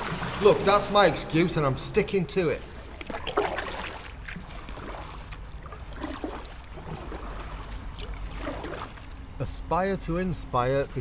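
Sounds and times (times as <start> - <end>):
kayak paddle splashing water: 2.8 - 9.1.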